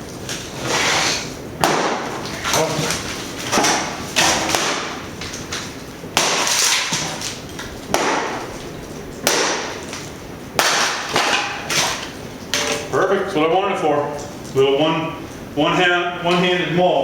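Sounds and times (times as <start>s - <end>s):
maul chopping firewood: 1.6s - 2.6s, 3.4s - 7.2s, 7.9s - 8.6s, 9.2s - 9.8s, 10.5s - 11.9s.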